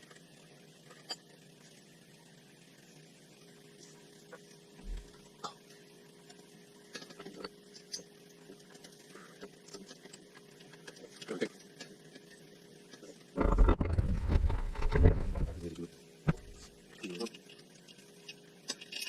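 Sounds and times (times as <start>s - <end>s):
faint steady hum: 0.0s - 19.0s
loud rumbling noise: 13.4s - 15.7s.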